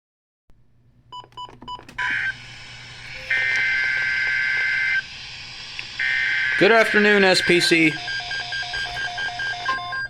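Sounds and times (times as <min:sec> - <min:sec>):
screeching digital data bursts: 0:03.1 - 0:05.3, 0:05.9 - 0:09.7.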